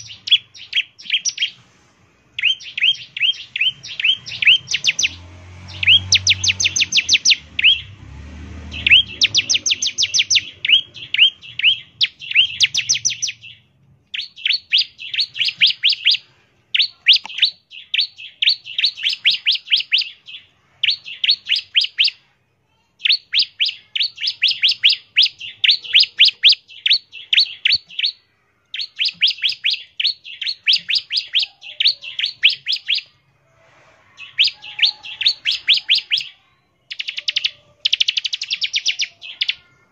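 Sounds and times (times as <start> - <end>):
bird singing high chip notes: 2.3 - 8.0, 8.6 - 22.2, 23.0 - 33.3, 34.2 - 39.9.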